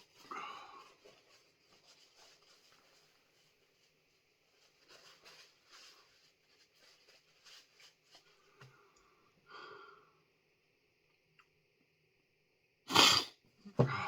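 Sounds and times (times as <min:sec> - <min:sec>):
faint scratchy rustles: 0:00.0 - 0:08.9.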